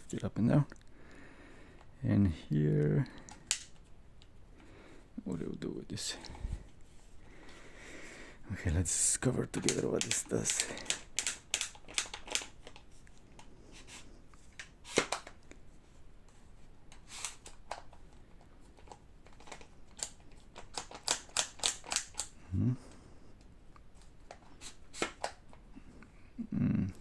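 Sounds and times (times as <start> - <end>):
rifle stock clicks and rattles: 3.1 - 4.4, 9.4 - 13.5, 16.9 - 22.4.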